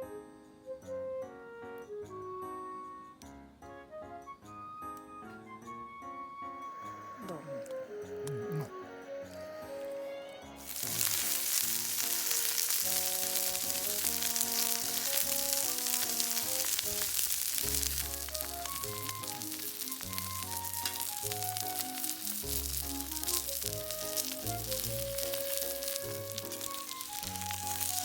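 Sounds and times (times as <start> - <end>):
background music: 0.0 - 28.0
food sizzling in pan: 10.6 - 28.0.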